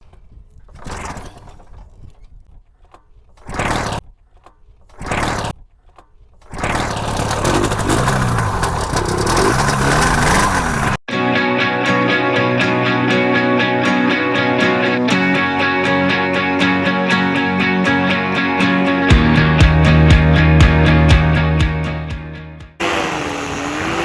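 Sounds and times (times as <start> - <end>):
paramotor engine starting and running: 6.6 - 11.0, 22.8 - 24.0.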